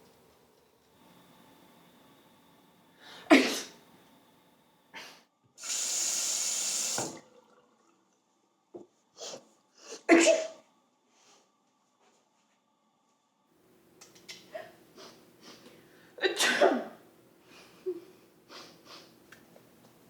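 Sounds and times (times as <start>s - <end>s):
person sneezing: 3.2s - 3.8s, 9.2s - 10.6s
steady hiss: 5.6s - 7.2s.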